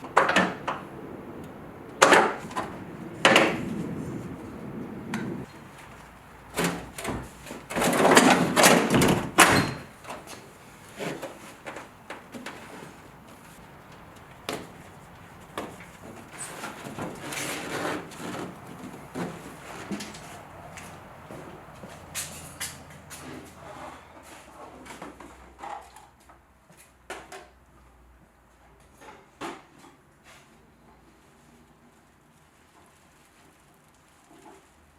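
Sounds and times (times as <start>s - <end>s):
knocks and thuds on sheet metal: 6.5s - 9.9s.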